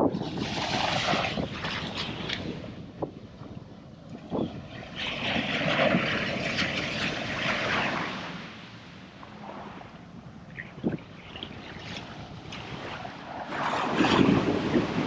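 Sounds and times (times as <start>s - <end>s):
wind on microphone: 0.0s - 15.0s
surf washing up the beach: 4.4s - 15.0s.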